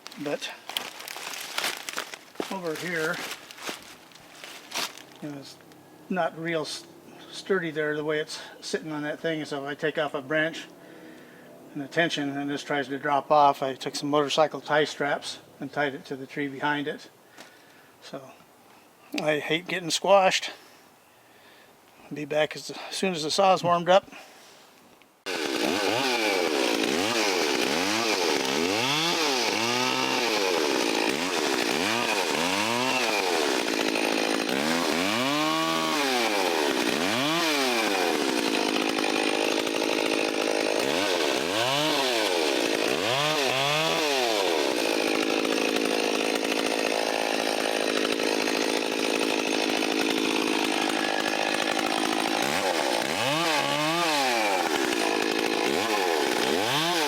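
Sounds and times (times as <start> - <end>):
chainsaw cutting wood: 0.0 - 5.9, 25.2 - 57.0.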